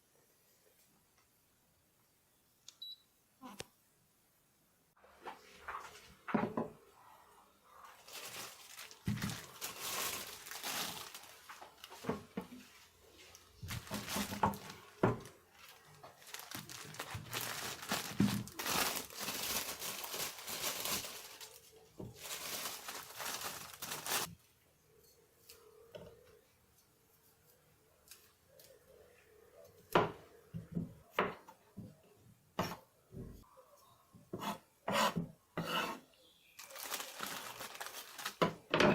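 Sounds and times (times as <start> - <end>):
packaging crinkling and tearing: 8.0 - 12.2, 13.6 - 24.3, 36.6 - 38.6.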